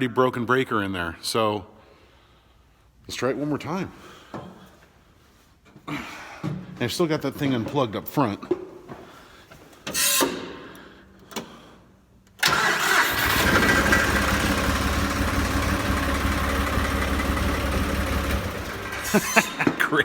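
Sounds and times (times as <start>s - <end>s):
diesel engine cranking and idling: 12.4s - 20.0s.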